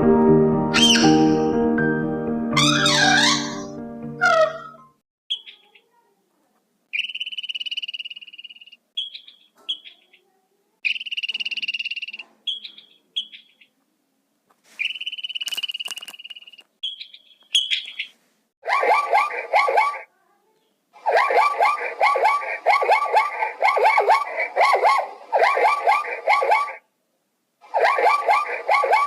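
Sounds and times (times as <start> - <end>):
short animal chirps: 0.8 - 1.2, 6.9 - 10.0, 10.8 - 13.7, 14.8 - 18.1.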